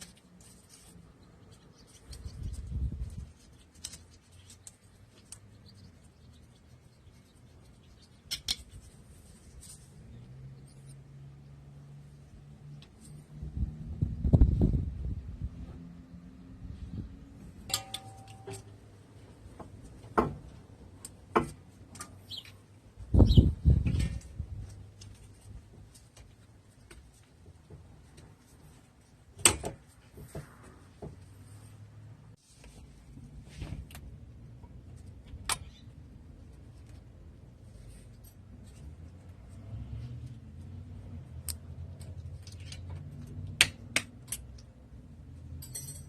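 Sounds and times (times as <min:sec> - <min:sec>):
low steady rumble: 0:00.0 - 0:21.0
knocks and clinks of tools: 0:17.7 - 0:18.8, 0:45.6 - 0:46.0.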